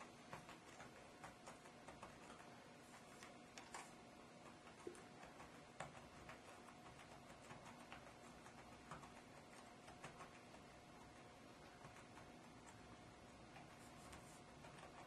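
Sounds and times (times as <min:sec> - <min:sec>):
fingers tapping rubber keyboard keys: 0:00.0 - 0:15.0.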